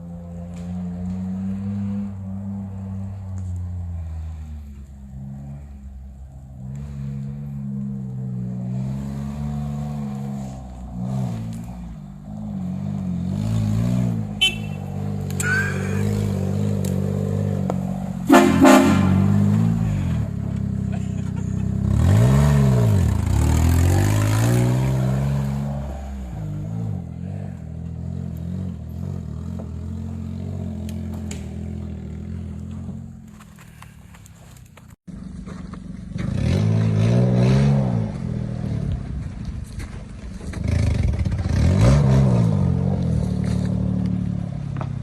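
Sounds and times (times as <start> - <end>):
small truck engine revving: 0.0 - 33.2, 36.1 - 39.1, 40.4 - 44.9
horn blast: 14.4 - 16.2, 18.2 - 20.2.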